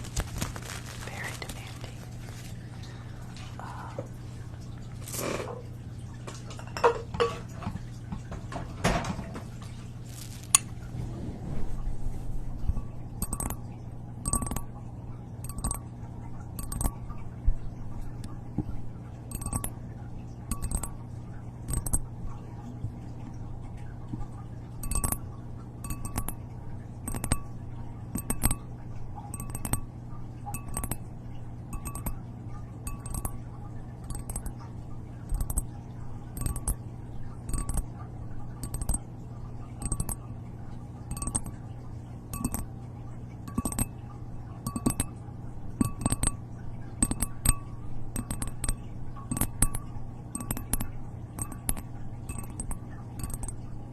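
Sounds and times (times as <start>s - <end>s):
steady low hum: 0.0s - 53.9s
clinking taps on ringing object: 12.7s - 13.6s, 14.2s - 14.7s, 15.4s - 15.9s, 16.6s - 17.0s, 19.3s - 19.8s, 20.5s - 21.0s, 21.7s - 22.0s, 24.8s - 25.2s, 25.8s - 26.4s, 27.0s - 28.7s, 29.3s - 29.9s, 30.5s - 31.1s, 31.7s - 32.2s, 32.8s - 33.4s, 34.0s - 34.6s, 35.3s - 35.7s, 36.4s - 36.8s, 37.5s - 37.9s, 38.6s - 39.0s, 39.8s - 40.2s, 41.1s - 41.6s, 42.3s - 42.7s, 43.5s - 44.0s, 44.6s - 45.2s, 45.8s - 46.4s, 47.0s - 53.6s.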